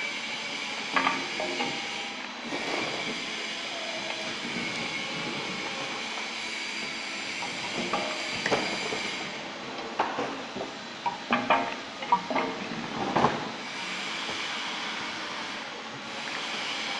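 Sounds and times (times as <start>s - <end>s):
liquid-filling machine hiss: 0.0s - 9.6s, 13.5s - 16.9s.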